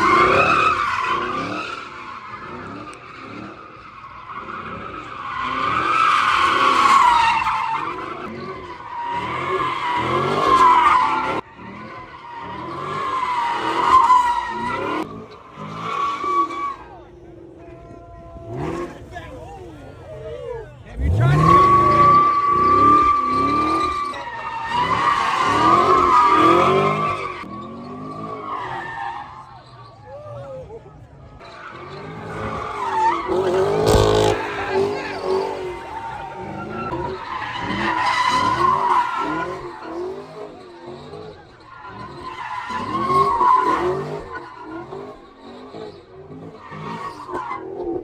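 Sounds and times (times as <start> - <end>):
car tyres screeching: 0.0 - 48.0
car engine revving: 20.9 - 28.3, 31.7 - 41.2.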